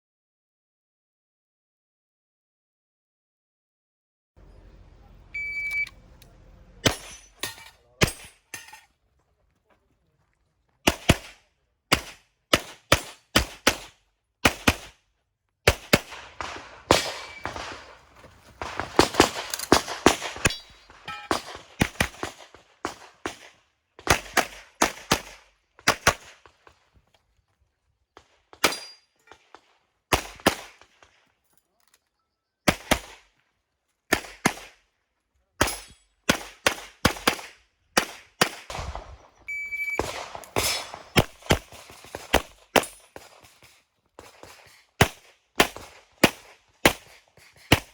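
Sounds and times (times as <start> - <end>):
shot timer beep: 5.3 - 6.0, 21.1 - 21.3, 39.5 - 40.0.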